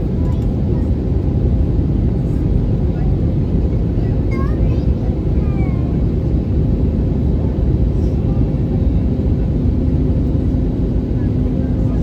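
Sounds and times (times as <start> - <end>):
airplane cabin engine rumble: 0.0 - 12.0.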